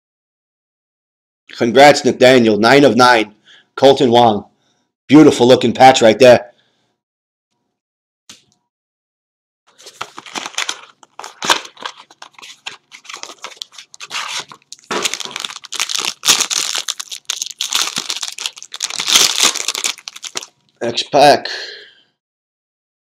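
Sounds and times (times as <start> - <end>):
packaging crinkling and tearing: 9.7 - 20.7.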